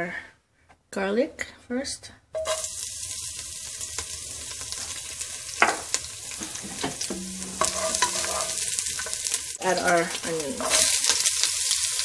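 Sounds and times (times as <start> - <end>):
garlic sizzling in hot oil: 2.4 - 12.0
utensil scraping a pan: 5.6 - 9.3, 10.2 - 11.4.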